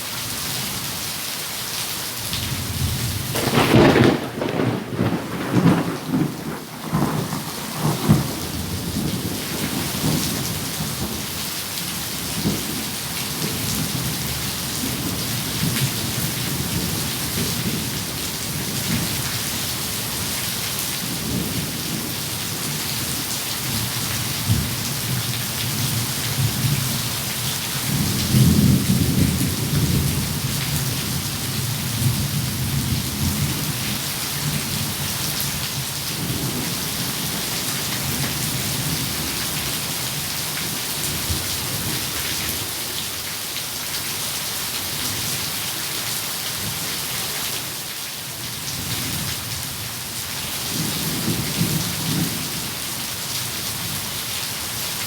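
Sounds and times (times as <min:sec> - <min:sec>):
heavy rain: 0:00.0 - 0:55.0
thunder rumbling: 0:02.7 - 0:11.3.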